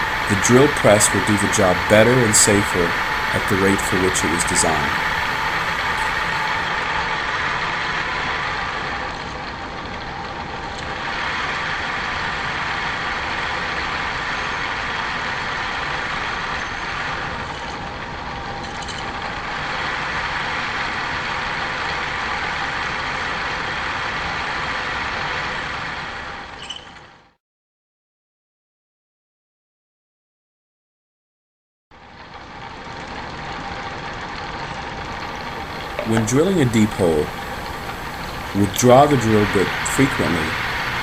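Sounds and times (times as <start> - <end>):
drill press running: 0.0 - 9.4, 35.0 - 41.0.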